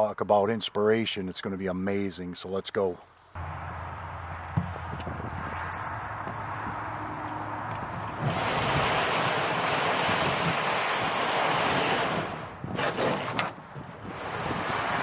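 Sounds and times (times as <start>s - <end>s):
wind buffeting microphone: 3.4s - 15.0s
rushing river water: 8.1s - 13.2s.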